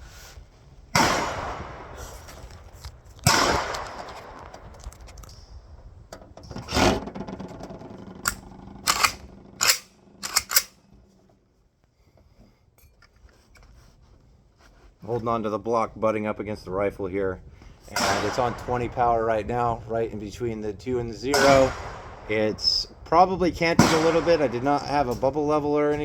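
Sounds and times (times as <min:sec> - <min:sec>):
gunshots with echo: 0:00.9 - 0:02.4, 0:03.3 - 0:04.5, 0:17.9 - 0:19.9, 0:21.2 - 0:26.0.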